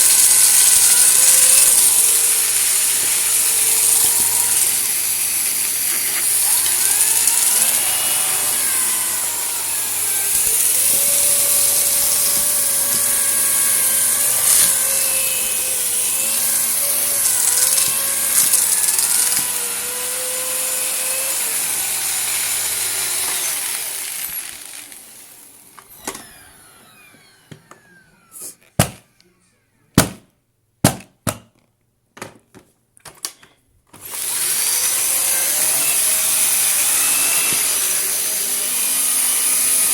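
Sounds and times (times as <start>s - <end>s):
vacuum cleaner running: 0.0s - 29.2s, 34.0s - 39.9s
vacuum cleaner winding down: 0.0s - 29.2s, 34.0s - 39.9s
clicks and knocks of handling: 31.3s - 34.0s.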